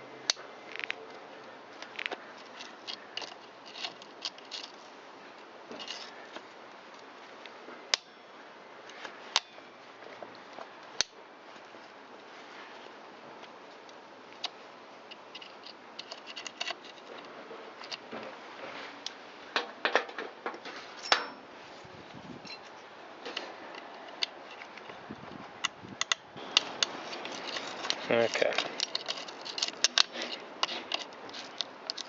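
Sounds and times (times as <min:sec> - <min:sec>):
tool scraping on bolt: 0:02.4 - 0:04.8, 0:26.5 - 0:32.0.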